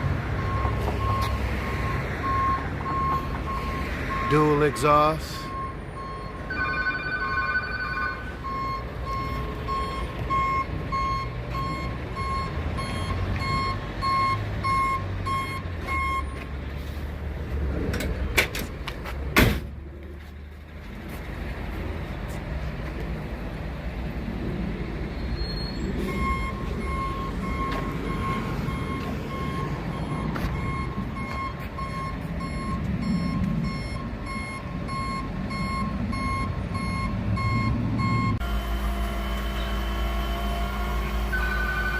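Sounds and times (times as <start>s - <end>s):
truck reversing alarm beeping: 0.0s - 16.4s, 25.2s - 41.9s
low engine rumble: 5.2s - 41.9s.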